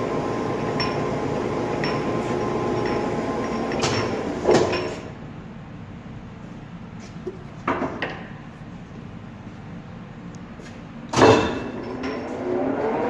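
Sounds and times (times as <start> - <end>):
lathe gear whir: 0.0 - 4.7
machine clunk: 0.4 - 5.1, 11.1 - 12.4.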